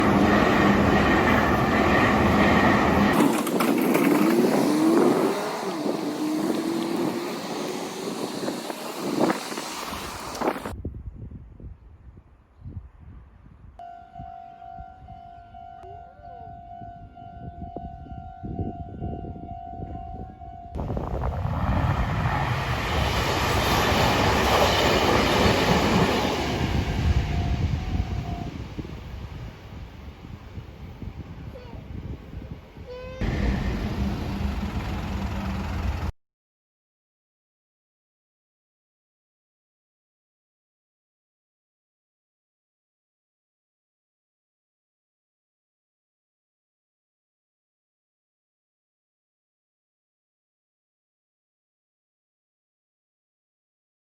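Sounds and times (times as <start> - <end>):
train wheels on rails: 0.0 - 10.7, 21.2 - 29.5, 33.2 - 36.1.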